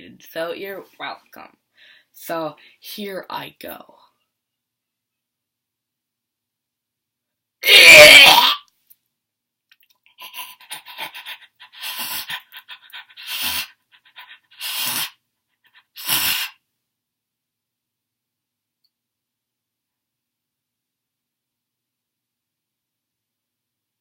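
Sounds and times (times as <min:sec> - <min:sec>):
person making harsh vocal burst: 0:07.6 - 0:08.6, 0:10.3 - 0:13.7, 0:14.5 - 0:15.2, 0:15.8 - 0:16.6
breathy hissing mouth noises: 0:10.1 - 0:16.6.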